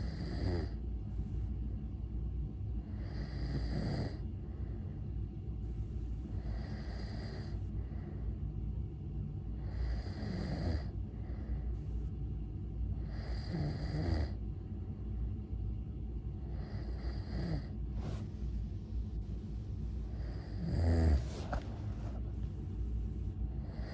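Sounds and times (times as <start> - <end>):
person snoring: 0.0 - 0.8, 3.0 - 4.2, 6.4 - 7.6, 9.6 - 10.9, 13.0 - 14.4, 16.5 - 17.7, 20.1 - 21.6
steady low hum: 0.0 - 23.9.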